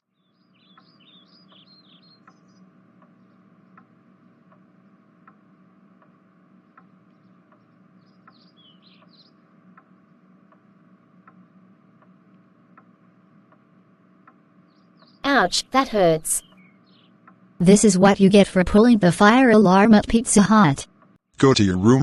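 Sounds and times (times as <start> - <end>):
faint bird-like chirps: 0.2 - 3.5, 6.8 - 9.4
low hum: 0.2 - 22.0
steady ticking: 0.6 - 22.0.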